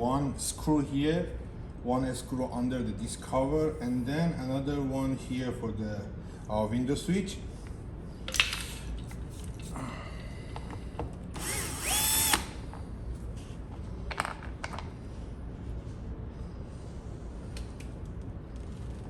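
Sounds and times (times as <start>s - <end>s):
drill-driver whine: 11.4s - 12.6s.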